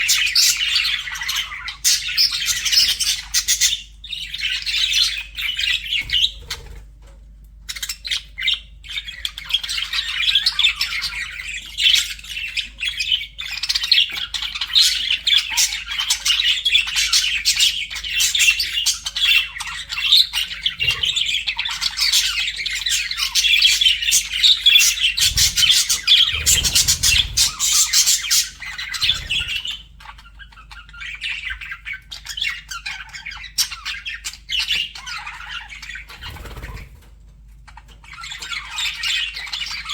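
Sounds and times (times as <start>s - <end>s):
budgerigars chattering: 0.0s - 6.8s, 7.7s - 37.1s, 37.7s - 39.9s.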